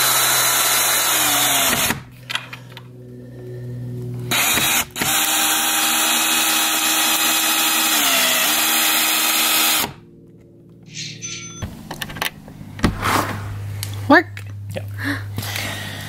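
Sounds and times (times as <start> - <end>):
power drill driving a screw: 0.0 - 2.0, 4.3 - 10.0.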